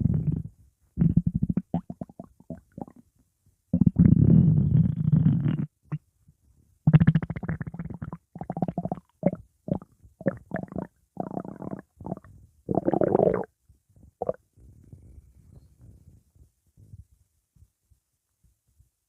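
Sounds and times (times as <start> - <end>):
stomach growling and gurgling: 0.0 - 3.0, 3.8 - 6.0, 6.9 - 13.5, 14.2 - 15.1.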